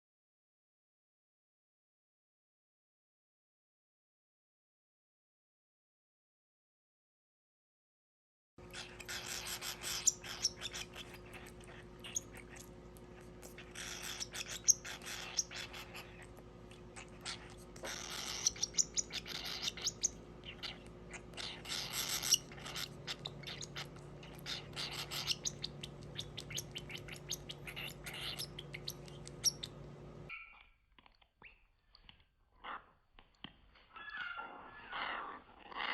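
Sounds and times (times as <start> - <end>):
steady low hum: 8.6 - 30.3
baby bird begging chirps: 8.6 - 30.6, 34.0 - 35.2.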